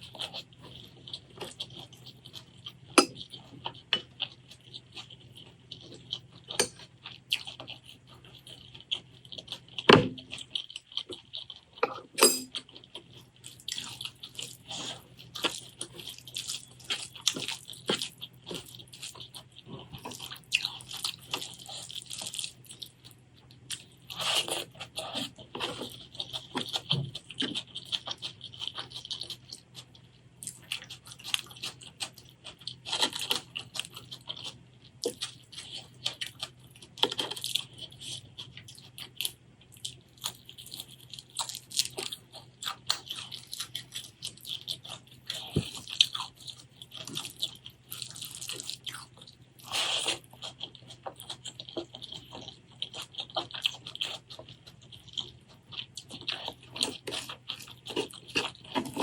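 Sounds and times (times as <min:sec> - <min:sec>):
chewing with crunches: 0:00.0 - 0:59.0.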